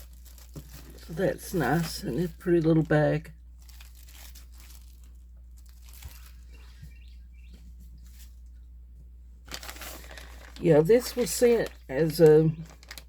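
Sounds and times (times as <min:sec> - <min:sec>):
packaging rustling: 0:00.0 - 0:06.8, 0:09.4 - 0:13.0
steady low hum: 0:00.0 - 0:12.9.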